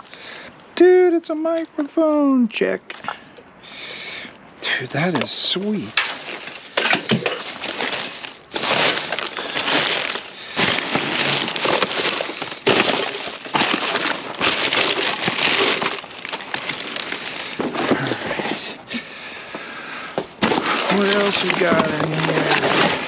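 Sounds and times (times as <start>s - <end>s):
debris crunching and clattering: 4.8s - 19.0s, 20.1s - 23.0s.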